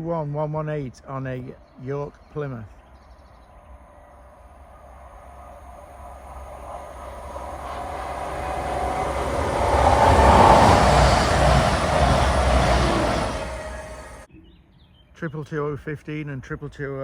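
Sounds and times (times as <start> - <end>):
rumble of train wheels and engines: 2.8 - 14.3
train passing at speed: 3.5 - 14.3.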